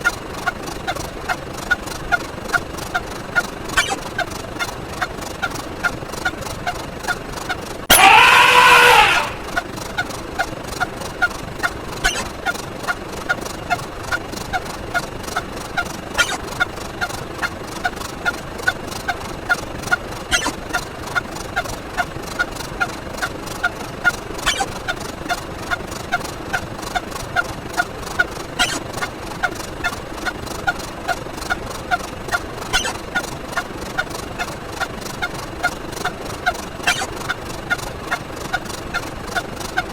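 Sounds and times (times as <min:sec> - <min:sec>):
pitch-bending sound effect: 0:03.8 - 0:04.0, 0:12.0 - 0:12.4, 0:16.2 - 0:16.4, 0:20.3 - 0:20.6, 0:24.5 - 0:24.8, 0:28.6 - 0:28.8, 0:32.8 - 0:33.0, 0:36.8 - 0:37.1
short pitched blips: 0:03.8 - 0:04.3, 0:12.0 - 0:12.6, 0:16.2 - 0:16.4, 0:20.3 - 0:20.6, 0:24.4 - 0:24.8, 0:28.6 - 0:30.0, 0:32.3 - 0:33.7, 0:36.8 - 0:37.3.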